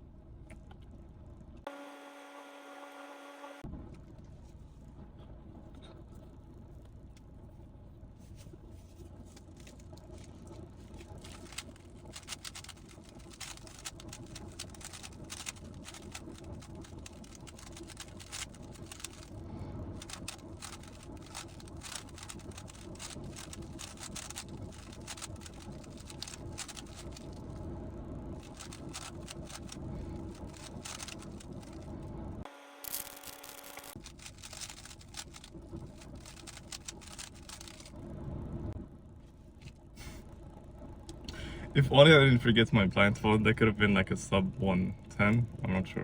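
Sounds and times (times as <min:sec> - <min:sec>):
low room hum: 0:00.0 - 0:46.0
puzzle cube clicking: 0:11.3 - 0:19.3, 0:20.0 - 0:27.3, 0:28.4 - 0:29.8, 0:32.9 - 0:37.9.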